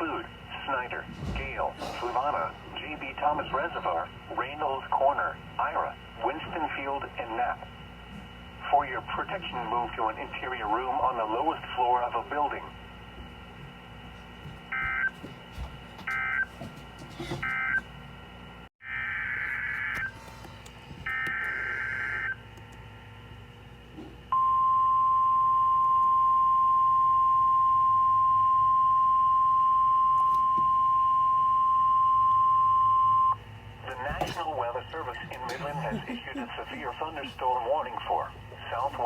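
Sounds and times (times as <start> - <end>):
steady warning alarm tone: 8.6 - 20.3, 21.0 - 22.5, 24.3 - 35.8.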